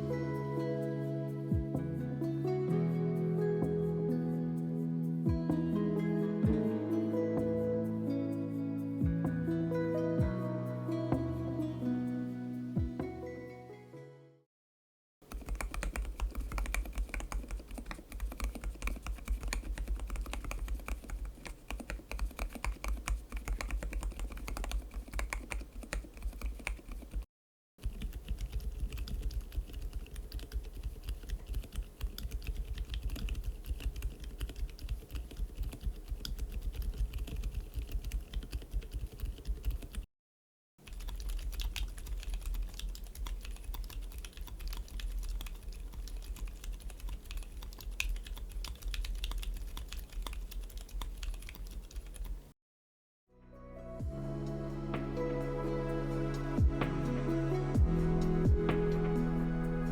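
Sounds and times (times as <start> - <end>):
typing on mechanical keyboard: 15.3 - 40.1, 40.8 - 52.5.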